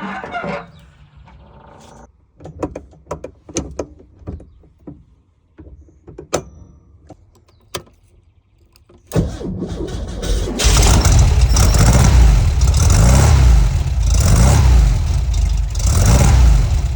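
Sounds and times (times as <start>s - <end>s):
mechanical rattling: 9.1s - 16.9s.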